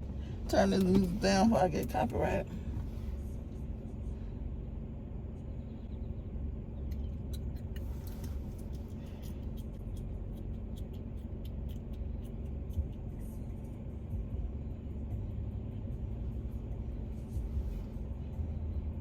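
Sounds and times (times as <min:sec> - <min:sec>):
low rumble inside a car: 0:00.0 - 0:19.0
faint music: 0:05.3 - 0:19.0
light irregular ticks: 0:06.8 - 0:13.8.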